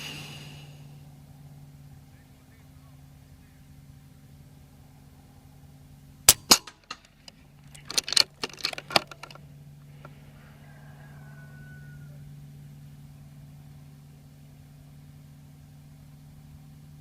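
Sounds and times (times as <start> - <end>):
air rifle firing: 6.3 - 7.3
metallic clicks: 6.3 - 10.1.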